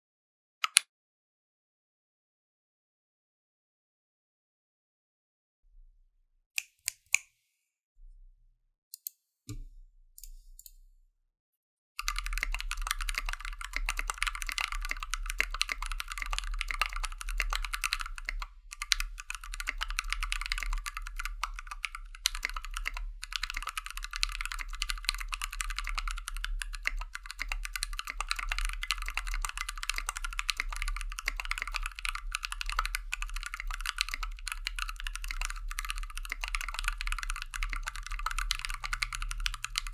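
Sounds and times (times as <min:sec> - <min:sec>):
mechanical keyboard typing: 0:00.6 - 0:00.8, 0:12.0 - 0:39.9.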